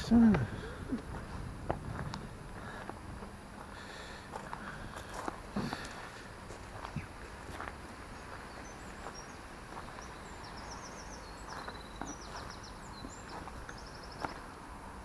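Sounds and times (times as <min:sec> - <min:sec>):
outdoor background hum: 0:00.0 - 0:15.0
songbird singing trilled phrases: 0:08.2 - 0:14.5.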